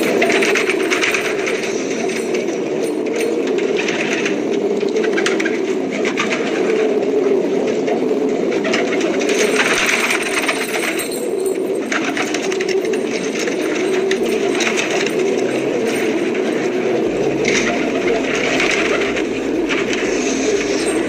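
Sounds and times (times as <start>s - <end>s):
rattling clicks and rustling: 0.0s - 4.4s, 9.1s - 21.0s
pigeons cooing: 0.0s - 21.0s.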